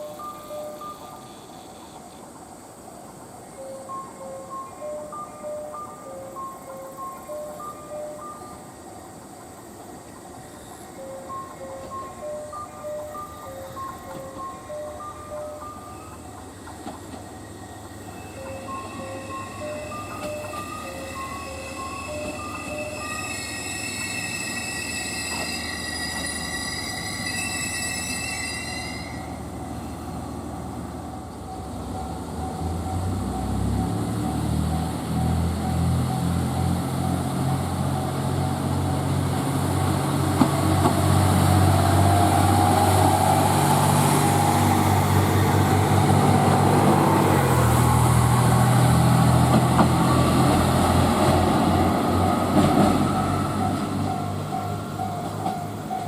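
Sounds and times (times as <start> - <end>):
high multi-tone ringing: 0.0 - 1.8, 3.5 - 8.9, 10.4 - 34.2
train running hum: 0.0 - 56.0.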